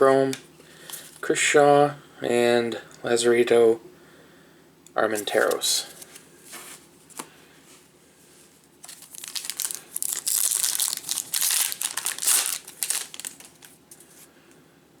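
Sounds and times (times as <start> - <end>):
foil wrapper crinkling and tearing: 8.8 - 13.8.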